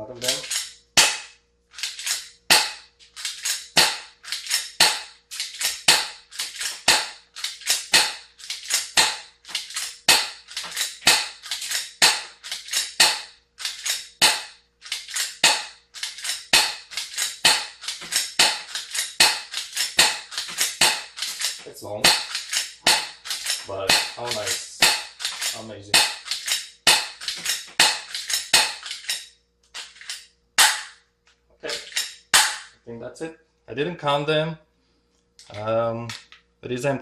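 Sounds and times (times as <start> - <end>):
airsoft pistol shots: 0.3 - 1.4, 2.0 - 29.2, 30.6 - 31.0, 31.8 - 32.7.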